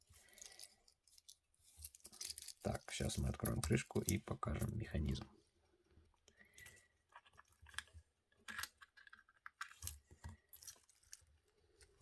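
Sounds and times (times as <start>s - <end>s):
small metal clicks and scrapes: 0.1s - 4.8s, 6.5s - 12.0s.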